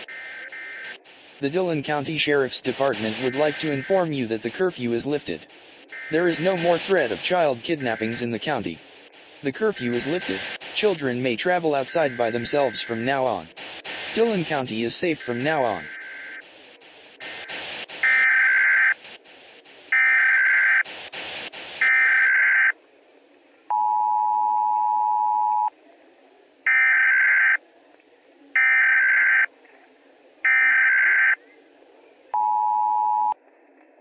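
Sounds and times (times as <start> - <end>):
steady attention tone: 0.0 - 8.8, 9.4 - 13.4, 14.0 - 16.4, 23.7 - 25.7, 32.3 - 33.4
harsh data bursts: 0.0 - 33.4
static crackle: 0.0 - 34.0.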